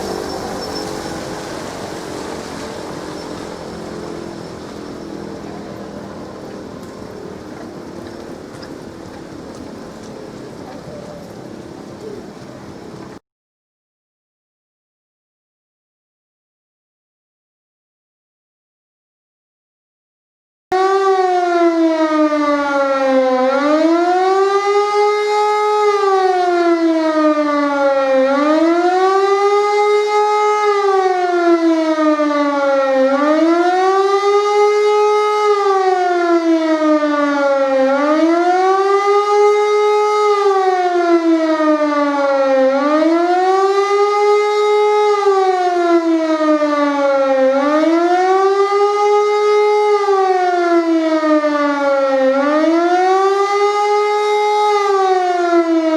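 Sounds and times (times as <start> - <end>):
siren wailing: 0.0 - 13.2, 20.7 - 55.9.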